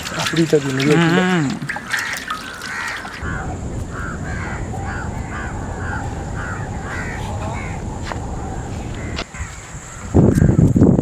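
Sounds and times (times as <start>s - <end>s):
bird harsh calls: 0.0s - 10.6s
steady low noise: 3.2s - 10.6s.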